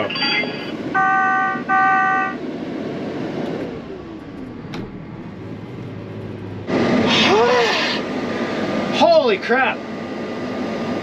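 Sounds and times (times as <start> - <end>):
chord-like electronic beeps: 0.0 - 2.3
combine engine running: 0.8 - 11.0
falling whine: 3.1 - 11.0.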